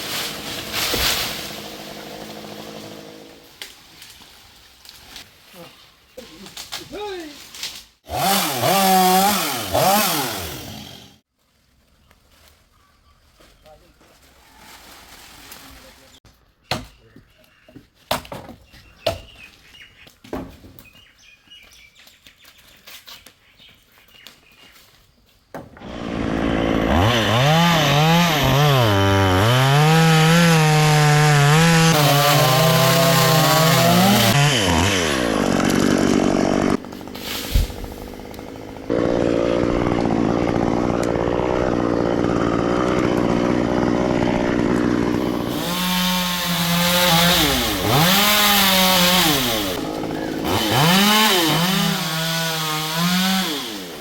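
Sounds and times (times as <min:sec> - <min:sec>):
chainsaw revving and cutting wood: 0:00.0 - 0:03.4, 0:08.0 - 0:11.3, 0:25.8 - 0:54.0.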